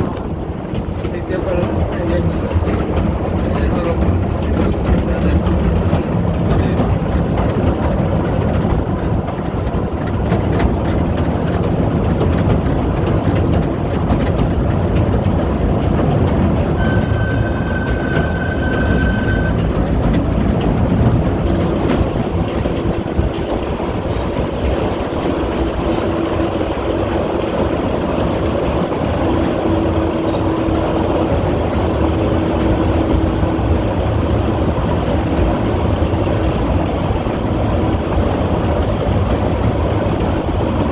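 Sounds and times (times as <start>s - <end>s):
train wheels rumbling on rails: 0.0s - 40.9s
thin high squeal: 16.8s - 19.6s.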